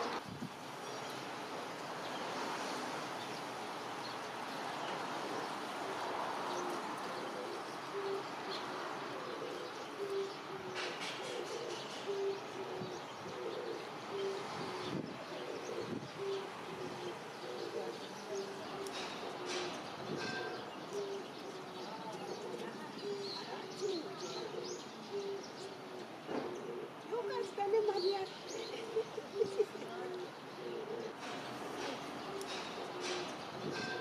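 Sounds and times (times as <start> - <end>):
wind hiss: 0.0 - 7.0
dove cooing: 4.9 - 34.0.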